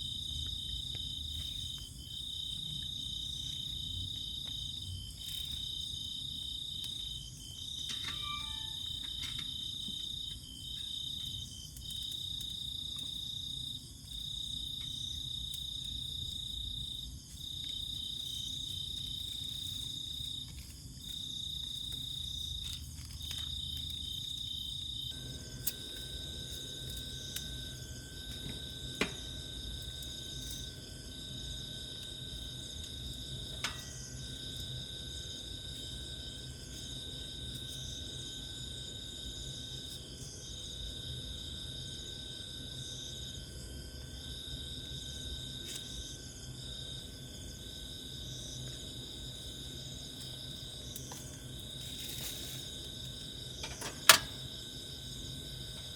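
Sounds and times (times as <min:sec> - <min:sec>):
insects trilling: 0:00.0 - 0:55.9
faint steady tone: 0:06.8 - 0:12.1.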